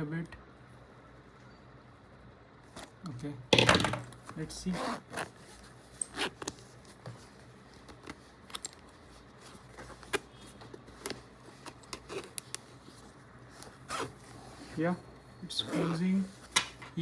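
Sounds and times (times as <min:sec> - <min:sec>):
zipper clicks and rasps: 0:11.7 - 0:12.6.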